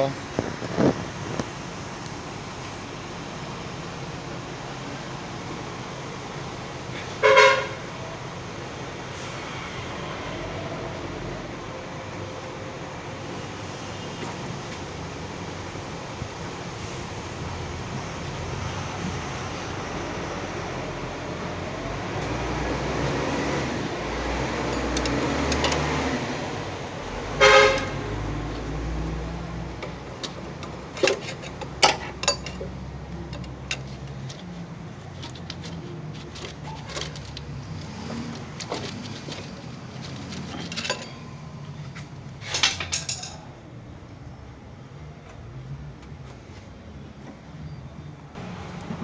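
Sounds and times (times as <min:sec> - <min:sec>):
traffic: 0:00.0 - 0:49.0
car horn toot: 0:07.2 - 0:07.8, 0:27.4 - 0:28.0
workshop noise: 0:11.6 - 0:43.8
hand tools clicking on metal: 0:24.7 - 0:25.9.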